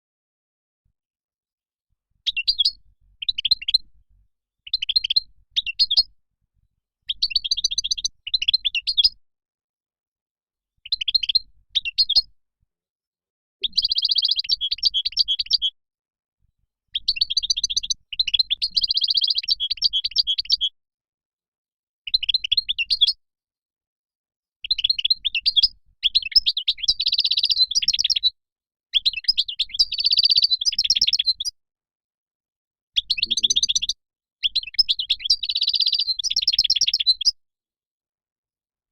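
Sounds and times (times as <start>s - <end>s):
finch twittering song: 2.2s - 3.9s, 4.7s - 6.1s, 7.0s - 9.2s, 10.8s - 12.3s, 13.6s - 15.8s, 17.0s - 20.7s, 22.1s - 23.2s, 24.6s - 28.4s, 29.0s - 31.5s, 33.0s - 37.4s.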